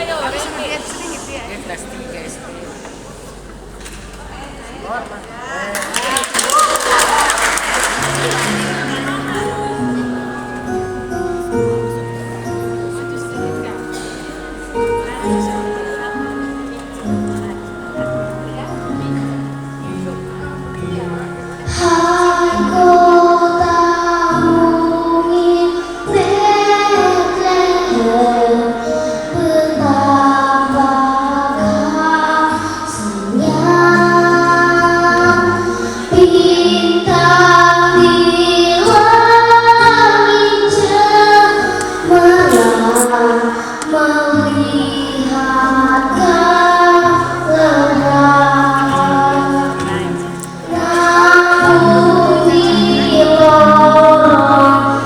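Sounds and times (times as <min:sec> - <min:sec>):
backing music: 0:06.2 - 0:55.0
child singing: 0:21.6 - 0:55.0.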